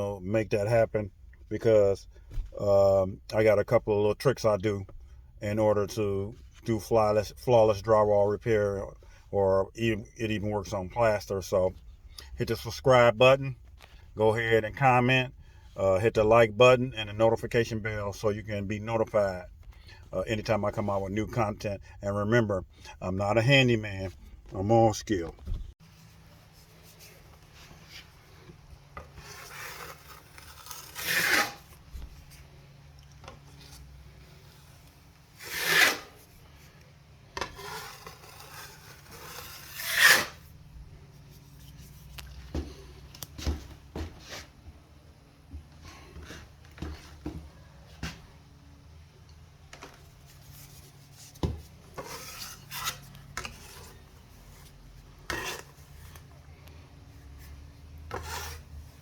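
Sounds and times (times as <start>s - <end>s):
hand scraping drywall patch: 29.0s - 31.8s, 35.4s - 36.3s, 37.4s - 40.5s, 50.3s - 56.2s, 57.4s - 58.8s.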